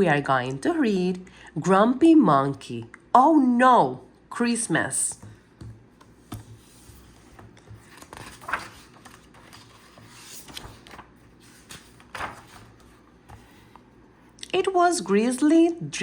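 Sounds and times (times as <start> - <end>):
book pages turning: 5.2 - 14.4.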